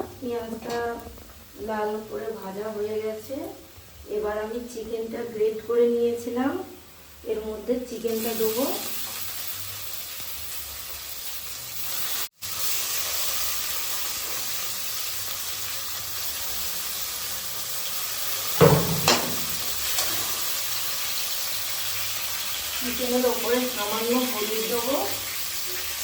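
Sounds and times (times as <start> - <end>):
chicken and onion sizzling in oil: 7.2 - 26.0
utensil knocking against pan: 18.6 - 20.3.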